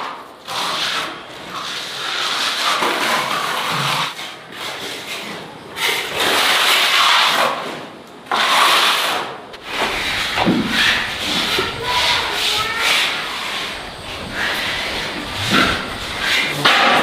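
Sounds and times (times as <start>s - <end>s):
leaves rustling: 9.5s - 17.0s.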